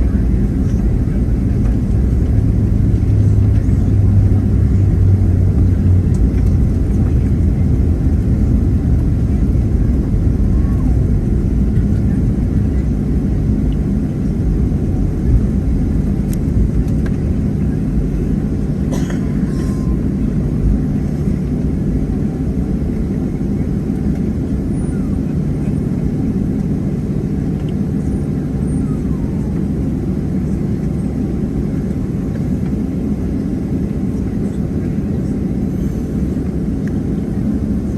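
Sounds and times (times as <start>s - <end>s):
airplane cabin rumble: 0.0s - 37.9s.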